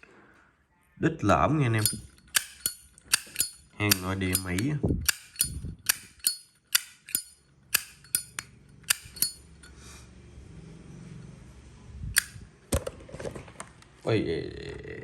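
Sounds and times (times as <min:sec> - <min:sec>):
lighter lid snapping open and shut: 0:01.8 - 0:09.4, 0:12.2 - 0:12.4.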